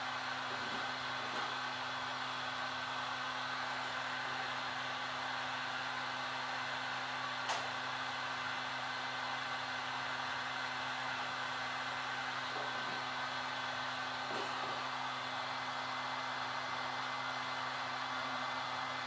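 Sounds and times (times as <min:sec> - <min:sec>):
heat gun blowing: 0:00.0 - 0:04.5, 0:12.0 - 0:17.8
sharp click: 0:07.5 - 0:07.7.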